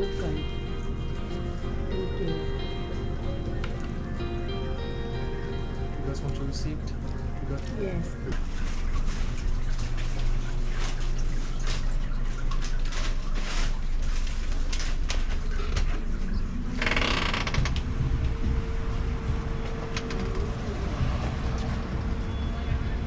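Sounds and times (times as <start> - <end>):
low steady hum: 0.0 - 16.8.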